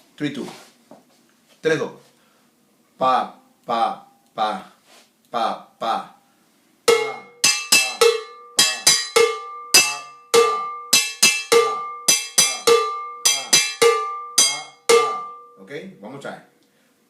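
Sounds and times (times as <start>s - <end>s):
cowbell struck with a stick: 6.9s - 15.6s.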